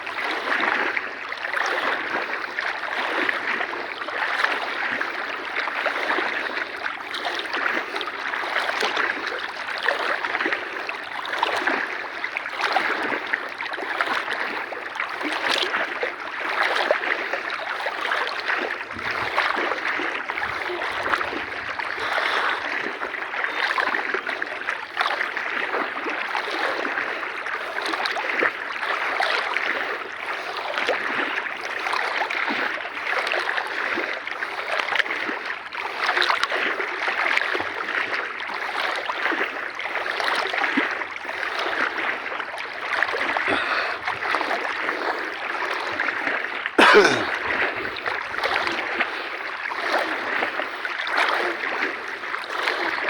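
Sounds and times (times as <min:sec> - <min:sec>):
water splashing and sloshing: 0:00.0 - 0:53.0.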